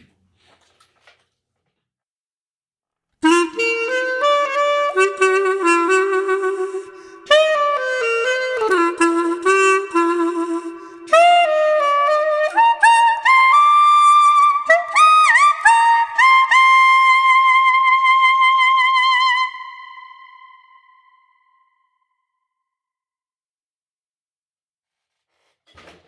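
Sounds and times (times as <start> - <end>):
solo wind instrument: 3.2 - 21.8.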